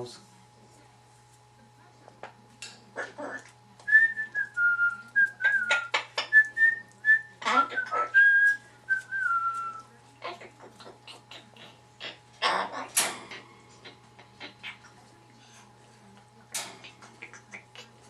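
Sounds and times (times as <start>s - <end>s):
cockatoo whistling: 3.9s - 9.8s.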